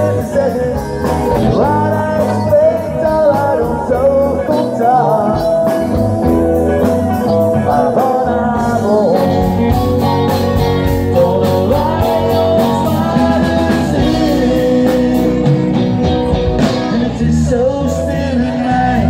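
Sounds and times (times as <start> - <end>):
live rock band playing: 0.0 - 19.0.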